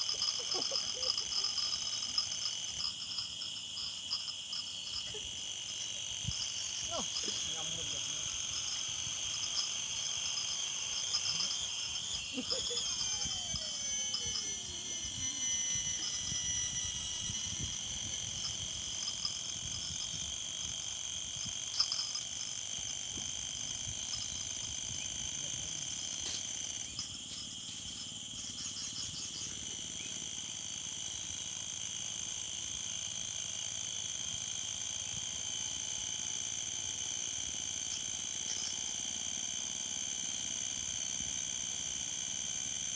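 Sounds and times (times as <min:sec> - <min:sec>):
insects trilling: 0:00.0 - 0:42.9
falling whistle-like glide: 0:11.3 - 0:18.2.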